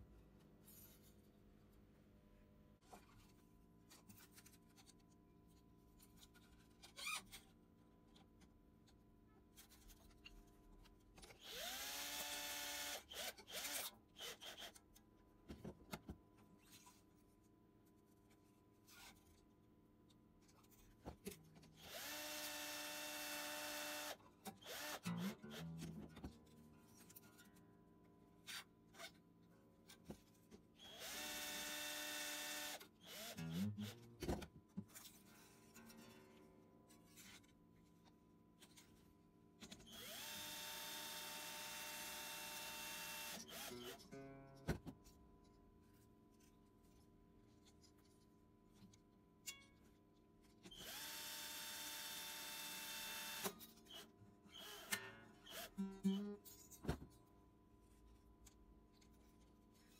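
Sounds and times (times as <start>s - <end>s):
small electric power tool running: 11.5s - 14.7s, 21.8s - 25.7s, 30.9s - 33.9s, 39.9s - 44.0s, 50.8s - 54.0s.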